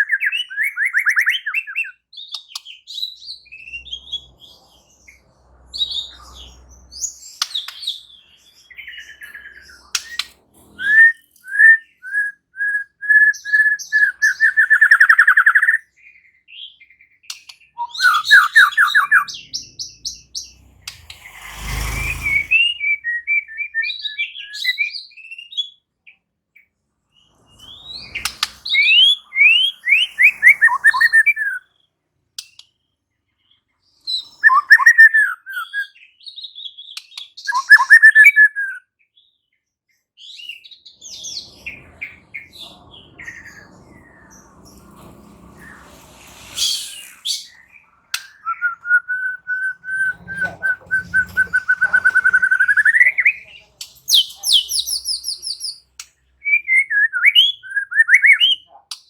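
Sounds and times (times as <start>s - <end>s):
bird singing whistled phrases: 0.0s - 4.3s, 6.9s - 15.8s, 17.3s - 25.8s, 27.6s - 31.8s, 34.1s - 38.9s, 46.6s - 58.7s
short burst of noise: 20.5s - 23.0s, 44.6s - 47.8s.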